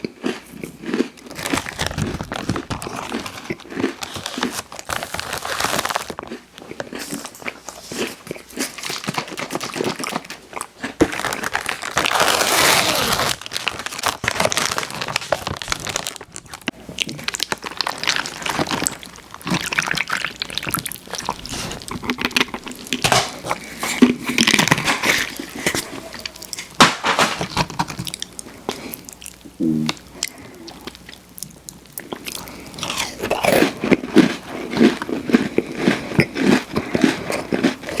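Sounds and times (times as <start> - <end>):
cookie crinkling and crackling: 0.0 - 29.5, 30.1 - 38.0
wet mouth sounds: 29.0 - 34.0.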